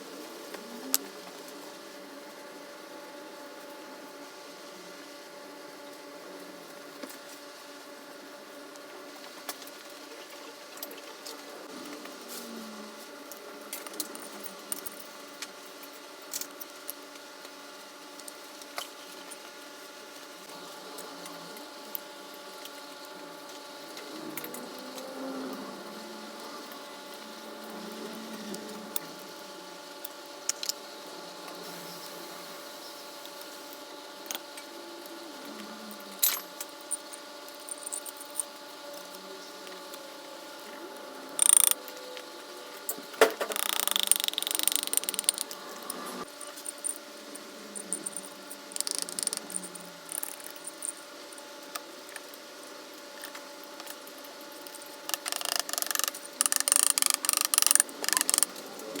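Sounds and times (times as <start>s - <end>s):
steady background hum: 0.0s - 59.0s
ratchet clicks: 41.4s - 41.8s, 43.4s - 45.6s, 48.8s - 51.0s, 55.0s - 58.6s.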